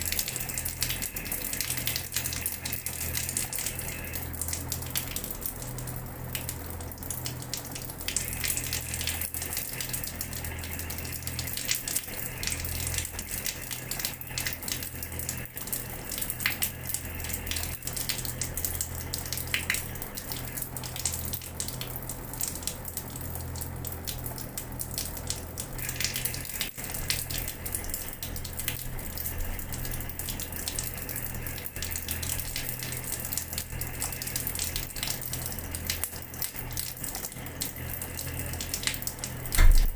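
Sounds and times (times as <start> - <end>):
low steady hum: 0.0 - 39.9
water running from a tap: 0.0 - 39.9
water splashing onto a floor: 38.6 - 39.9.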